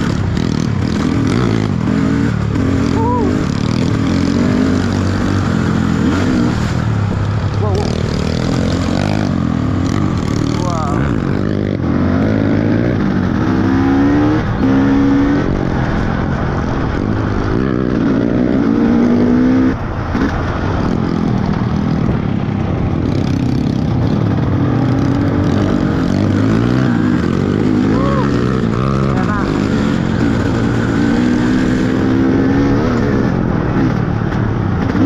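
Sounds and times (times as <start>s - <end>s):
motorcycle engine revving: 0.0s - 35.0s.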